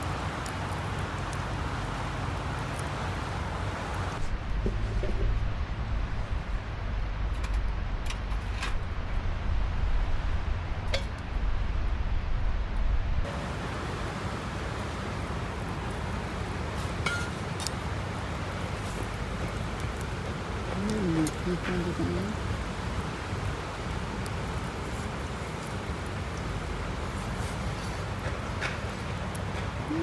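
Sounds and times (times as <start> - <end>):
steady hiss: 13.3 - 30.0.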